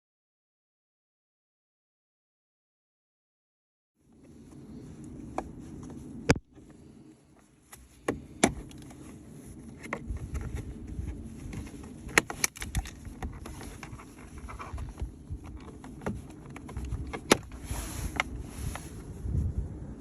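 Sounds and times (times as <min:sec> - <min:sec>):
low steady rumble: 0:04.0 - 0:20.0.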